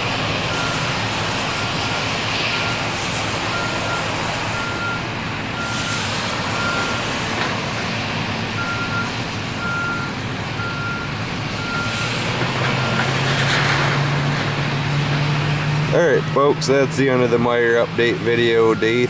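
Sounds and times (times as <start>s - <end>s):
engines running low: 0.0s - 19.0s
reversing alarm beeping: 0.5s - 7.1s, 8.6s - 12.2s, 12.8s - 13.2s, 18.6s - 19.0s.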